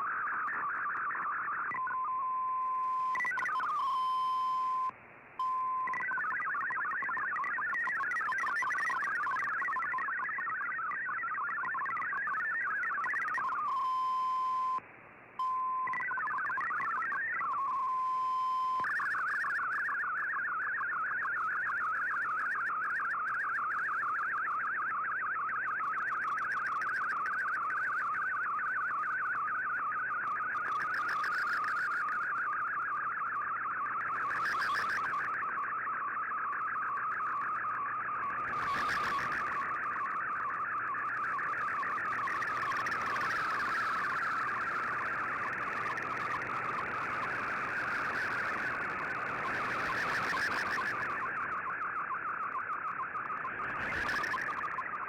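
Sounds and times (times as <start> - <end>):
fast regular data warble: 0.0 - 14.8, 15.4 - 55.0
steady single data tone: 0.0 - 14.8, 15.4 - 55.0.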